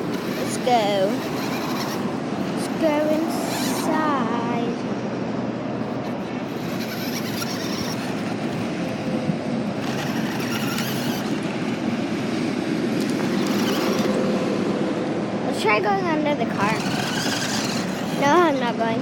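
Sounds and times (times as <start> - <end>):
toy car whirring: 0.0 - 4.4, 5.8 - 9.1, 9.7 - 11.7, 13.0 - 14.4, 16.4 - 18.7.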